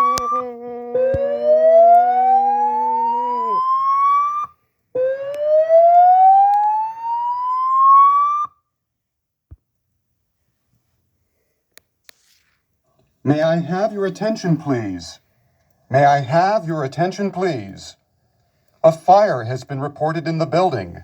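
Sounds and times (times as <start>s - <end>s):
steady low tone: 0.0s - 4.2s
slow rising whoop tone: 0.0s - 8.2s.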